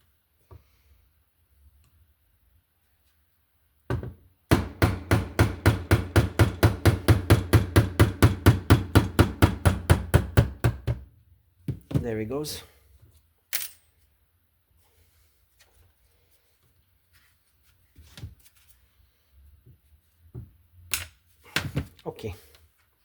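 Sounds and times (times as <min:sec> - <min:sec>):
hammer tapping metal punch: 0:03.9 - 0:11.0.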